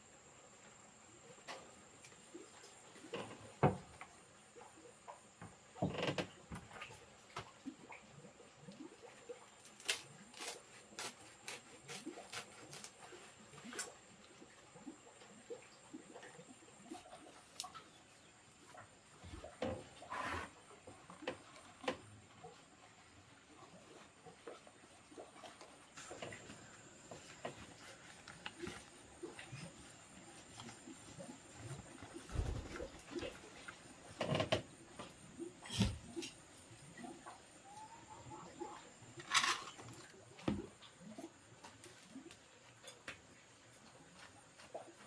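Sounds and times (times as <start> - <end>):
rustles: 25.3 - 36.4.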